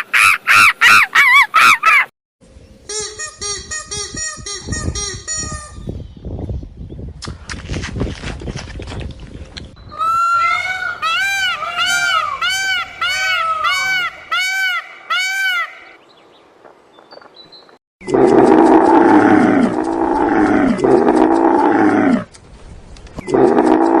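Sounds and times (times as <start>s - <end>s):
honking bird calls: 9.9s - 16.0s
tiger roaring: 18.0s - 22.3s, 23.2s - 24.0s.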